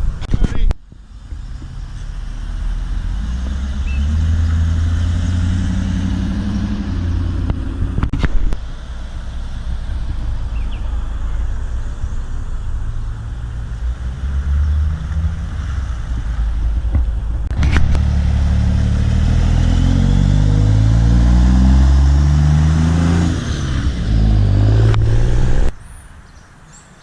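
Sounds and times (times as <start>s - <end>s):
cars driving slowly past: 0.9s - 27.0s
loud engine pitch rising: 2.3s - 8.0s, 17.5s - 25.7s.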